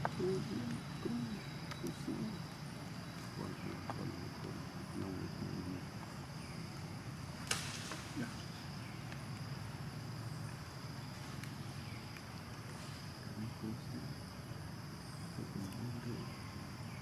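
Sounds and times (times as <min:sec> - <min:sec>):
soft indistinct vocal sounds: 0:00.0 - 0:02.5, 0:03.2 - 0:05.9
faint high whine: 0:00.0 - 0:17.0
steady low hum: 0:00.0 - 0:17.0.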